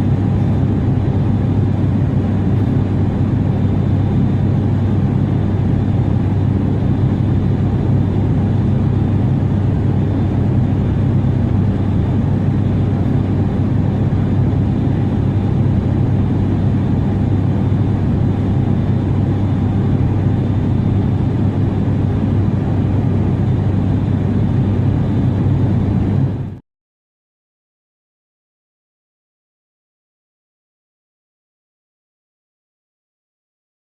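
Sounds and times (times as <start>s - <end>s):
airplane engine drone: 0.0s - 26.6s.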